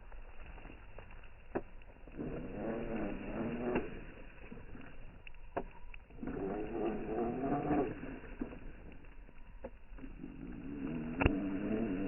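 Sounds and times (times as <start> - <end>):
toy car motor revving: 2.2 - 4.0, 6.2 - 8.7, 10.0 - 12.0.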